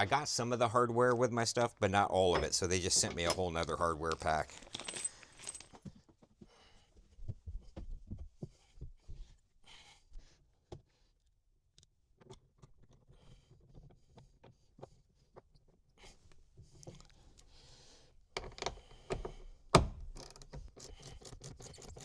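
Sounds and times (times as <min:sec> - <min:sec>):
small bolts clicking and knocking: 0:20.0 - 0:22.0.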